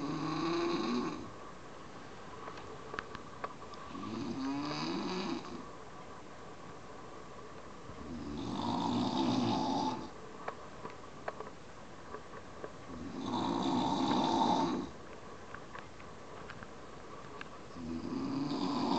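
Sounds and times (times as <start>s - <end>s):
person snoring: 0.0s - 1.3s, 3.9s - 5.6s, 8.0s - 10.1s, 12.9s - 15.0s, 17.8s - 18.9s
faint clicks: 15.0s - 17.6s.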